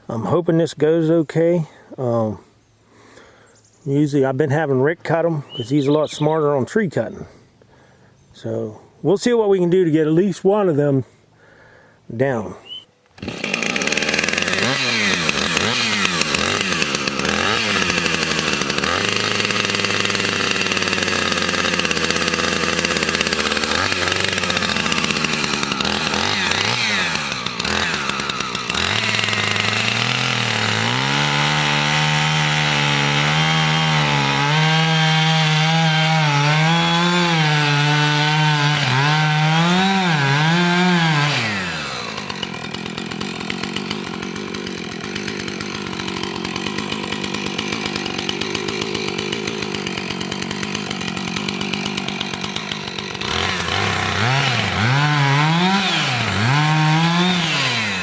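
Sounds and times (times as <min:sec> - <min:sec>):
chainsaw cutting wood: 0:13.1 - 0:58.0.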